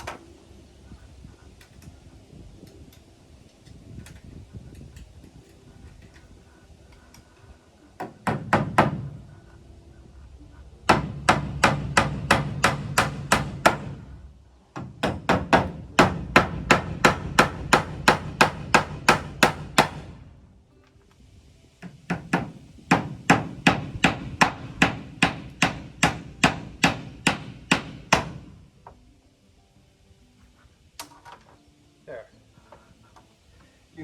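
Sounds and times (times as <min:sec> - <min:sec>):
hammer driving nails into wood: 0:08.0 - 0:09.2, 0:10.9 - 0:14.1, 0:14.7 - 0:20.2, 0:21.8 - 0:28.6.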